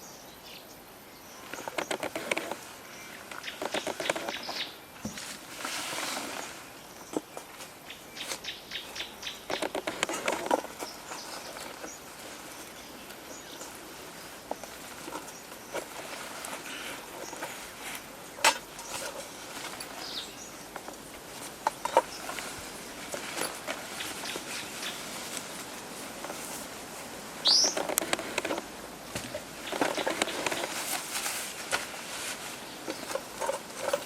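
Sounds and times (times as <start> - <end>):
forest background: 0.0 - 34.0
clicks snaps and rustles: 1.5 - 2.6, 3.3 - 4.6, 9.4 - 12.4, 27.5 - 34.0
faint bird chirps: 27.4 - 27.8.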